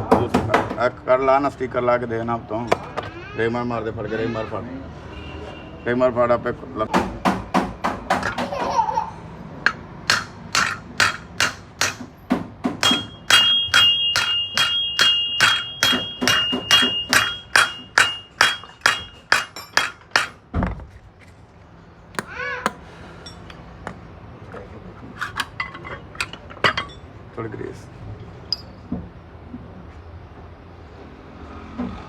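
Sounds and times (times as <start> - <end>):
hammer blows on metal: 9.7 - 20.4
high metallic ring: 12.8 - 20.3.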